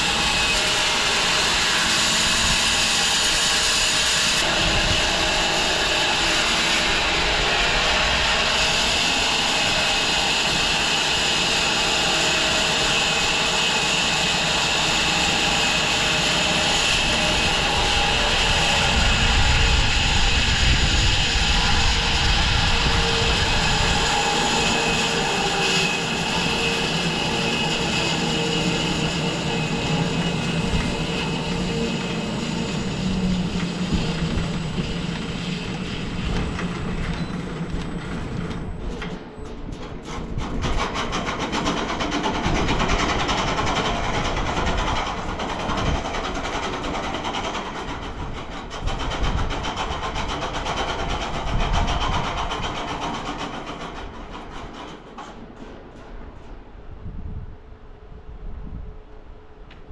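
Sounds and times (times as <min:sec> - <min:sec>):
bandsaw mill sawing log: 0:00.0 - 0:37.2.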